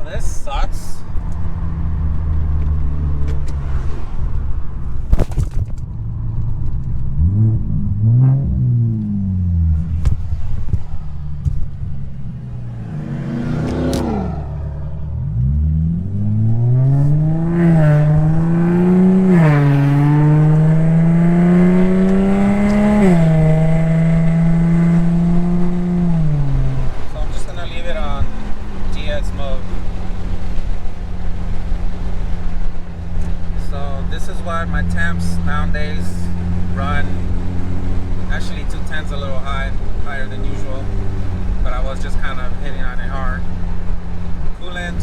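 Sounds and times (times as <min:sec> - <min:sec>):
car engine accelerating through gears: 0:01.1 - 0:45.0.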